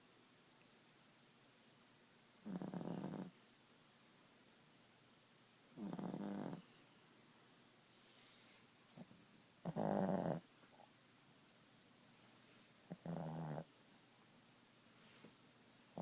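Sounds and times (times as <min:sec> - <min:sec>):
dog snoring: 0:02.4 - 0:03.4, 0:05.7 - 0:06.7, 0:08.9 - 0:10.5, 0:12.9 - 0:13.7.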